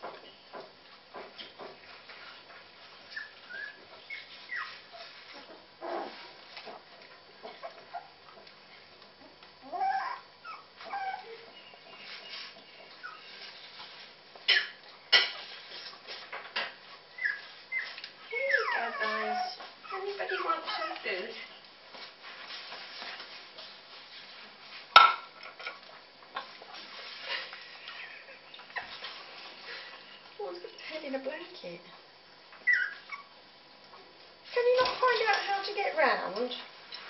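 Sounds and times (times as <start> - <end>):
puppies whimpering and squeaking: 3.0 - 6.3, 7.4 - 14.0, 16.9 - 21.6, 32.6 - 33.4.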